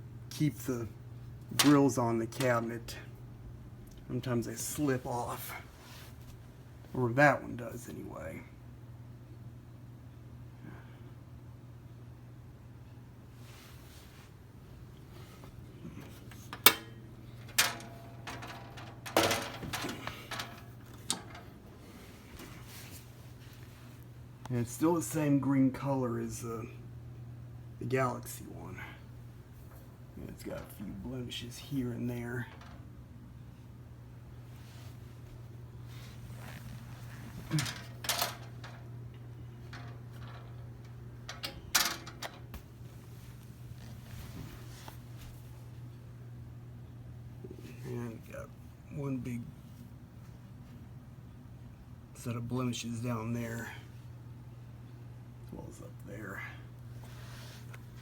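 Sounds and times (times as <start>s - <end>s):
steady low hum: 0.0s - 58.0s
metal fan cabinet clicks and knocks: 1.5s - 2.7s, 16.0s - 22.5s, 29.7s - 31.1s, 32.2s - 33.0s, 37.2s - 42.8s.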